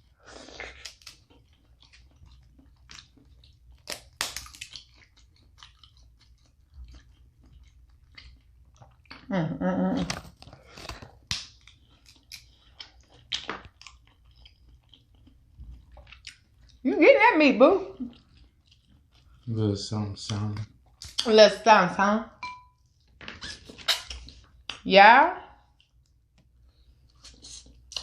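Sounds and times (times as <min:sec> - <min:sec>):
wet chewing and mouth smacking: 0:00.3 - 0:09.3, 0:10.3 - 0:16.9, 0:17.9 - 0:19.6, 0:20.2 - 0:21.3, 0:25.6 - 0:28.0.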